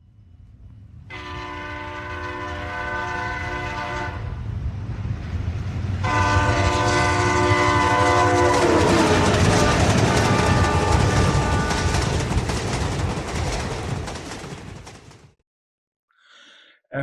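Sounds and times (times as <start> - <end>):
low rumble of a train: 0.0 - 15.4
train air horn blasts: 1.1 - 4.3, 6.0 - 11.9.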